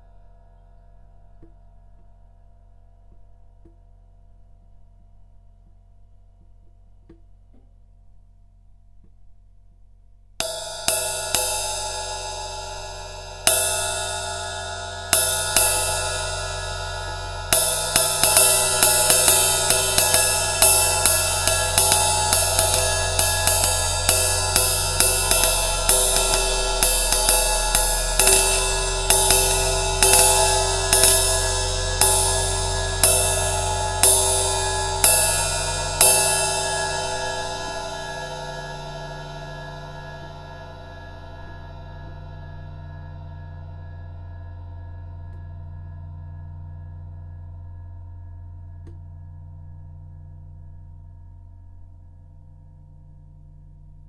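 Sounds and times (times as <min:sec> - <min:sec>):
ride cymbal strokes: 0:10.4 - 0:44.2.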